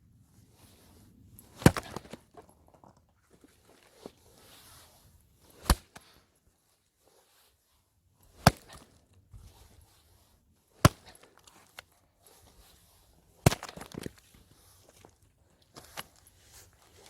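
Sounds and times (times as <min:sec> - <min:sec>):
axe blows splitting wood: 0:01.4 - 0:02.2, 0:05.5 - 0:06.1, 0:08.3 - 0:09.0, 0:10.7 - 0:11.4, 0:13.4 - 0:14.2.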